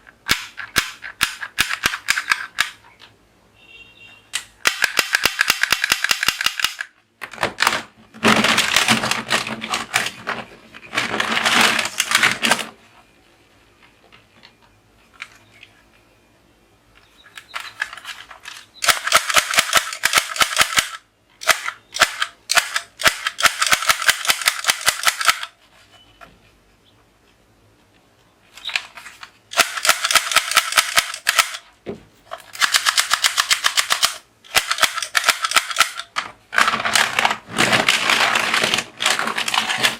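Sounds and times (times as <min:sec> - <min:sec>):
toy guns firing clicking bursts: 0:00.3 - 0:02.8, 0:04.6 - 0:07.0, 0:18.8 - 0:25.6, 0:29.5 - 0:31.6, 0:32.5 - 0:36.7.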